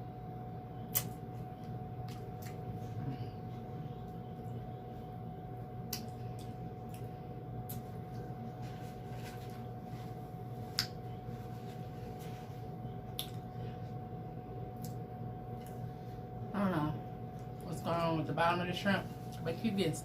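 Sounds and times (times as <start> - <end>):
steady hum: 0.0 - 20.0
wet squishing of eating: 0.9 - 3.2.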